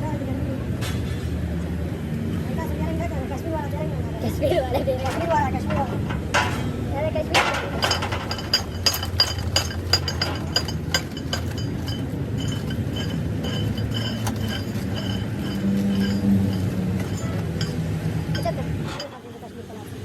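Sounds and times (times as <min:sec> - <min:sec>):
low machine hum: 0:01.5 - 0:19.2
metal clinking: 0:05.0 - 0:06.8, 0:07.4 - 0:19.2.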